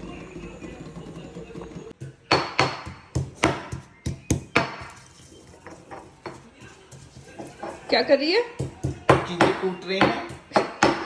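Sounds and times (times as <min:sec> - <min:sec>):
food being pounded: 0:02.0 - 0:05.0, 0:08.6 - 0:11.0.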